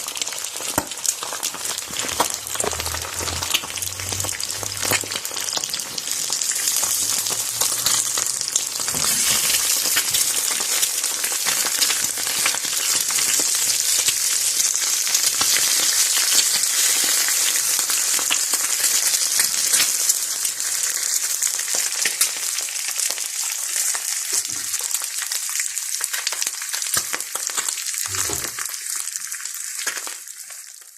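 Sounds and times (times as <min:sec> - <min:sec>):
egg sizzling in oil: 0:00.0 - 0:30.9.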